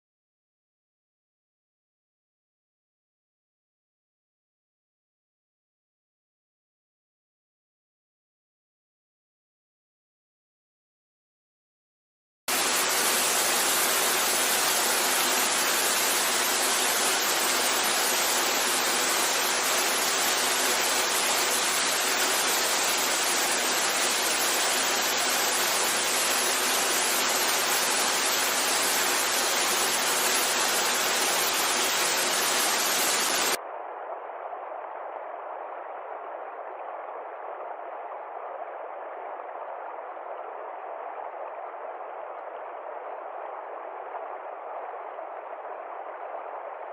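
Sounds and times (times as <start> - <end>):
waterfall rushing: 12.5 - 33.6.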